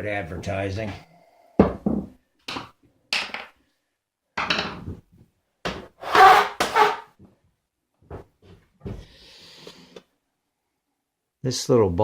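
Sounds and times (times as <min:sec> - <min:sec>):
tools knocking on workbench: 0:01.6 - 0:03.4.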